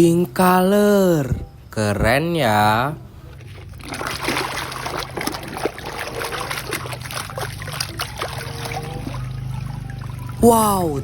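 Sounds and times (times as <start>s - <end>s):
wet mud squelching: 3.2s - 11.0s.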